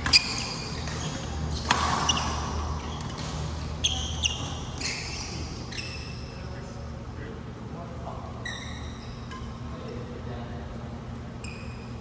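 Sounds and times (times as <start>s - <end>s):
racket striking shuttlecock: 0.0s - 2.2s
shoe squeaks on court floor: 0.0s - 6.4s, 8.4s - 9.3s, 11.4s - 12.0s.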